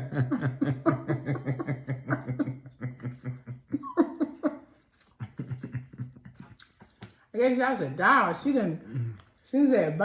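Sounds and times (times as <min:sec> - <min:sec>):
person laughing: 0:00.0 - 0:06.6.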